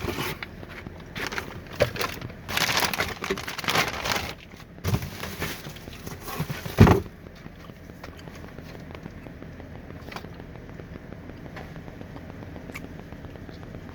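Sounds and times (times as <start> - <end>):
packaging crinkling and rustling: 0.0 - 8.8.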